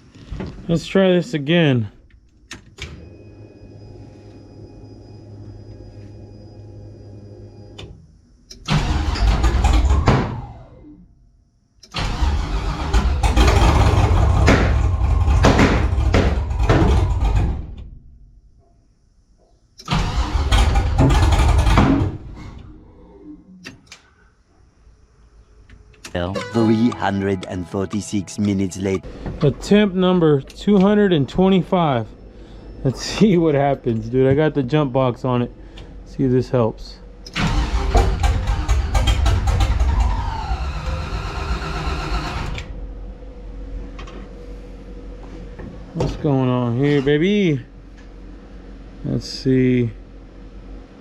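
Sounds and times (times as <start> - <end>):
fuel pump electric hum: 0.0 - 26.4, 28.6 - 51.0
engine cranking with popping: 8.7 - 10.1, 11.9 - 17.8, 19.9 - 22.6, 37.3 - 42.7.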